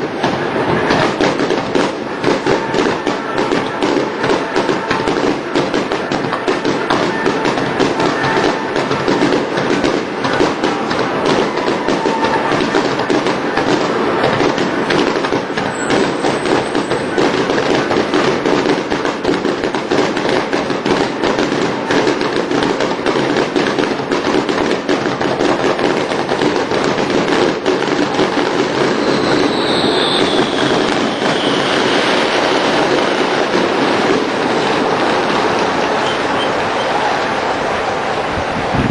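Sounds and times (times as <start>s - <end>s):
fireworks crackling: 0.0s - 38.9s
falling firework whistle: 0.6s - 13.1s, 13.8s - 18.8s, 27.3s - 37.2s.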